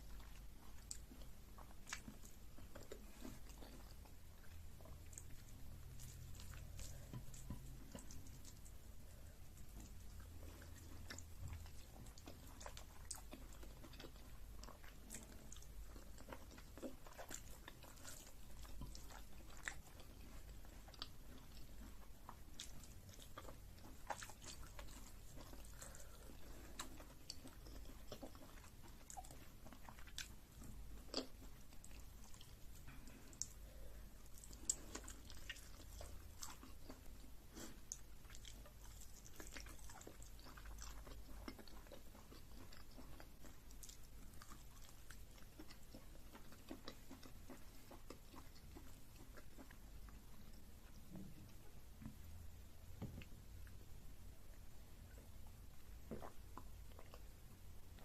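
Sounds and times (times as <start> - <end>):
food crunching: 0.0 - 52.1
person chewing food: 0.0 - 58.0.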